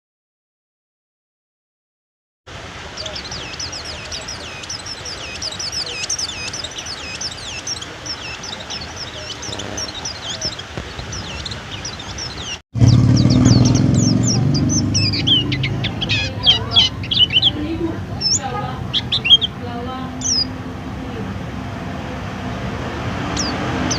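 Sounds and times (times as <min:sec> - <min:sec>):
bird singing high chirps: 0:02.8 - 0:20.6, 0:23.3 - 0:23.9
loud low drone: 0:12.8 - 0:16.0.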